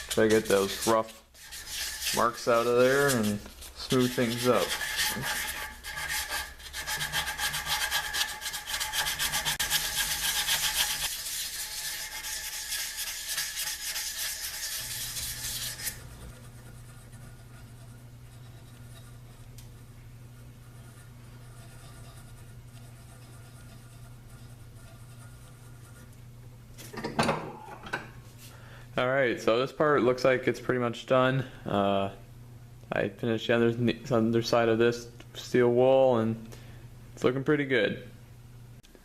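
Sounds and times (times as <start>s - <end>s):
sandpaper rubbing on metal: 0.0s - 19.3s, 20.6s - 26.1s
faint low hum: 14.0s - 39.0s.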